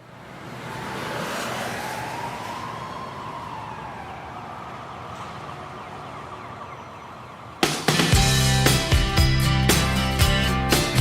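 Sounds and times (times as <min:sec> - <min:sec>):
siren-like wail: 0:00.4 - 0:08.1.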